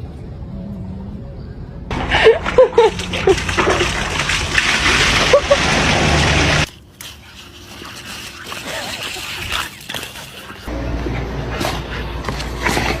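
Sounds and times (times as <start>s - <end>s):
water splashing and sloshing: 1.9s - 10.7s.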